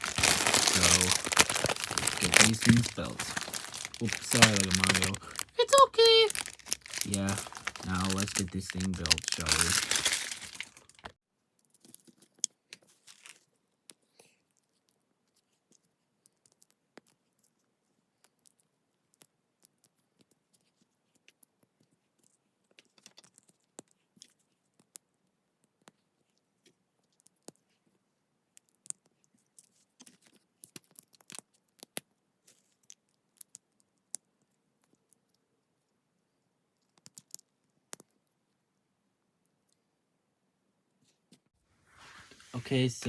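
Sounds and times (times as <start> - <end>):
small rustles: 0.0 - 11.1, 41.8 - 43.0.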